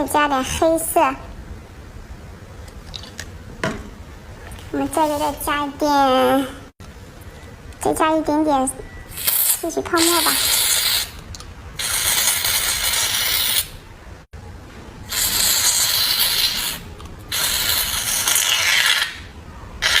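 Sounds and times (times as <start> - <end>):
aerosol foam can spraying: 9.2 - 11.2, 11.8 - 13.7, 15.1 - 19.2.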